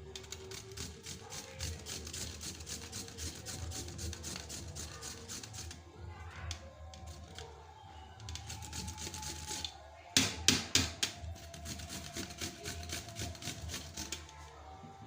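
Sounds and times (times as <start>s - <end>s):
knife cutting radish: 11.4s - 14.3s.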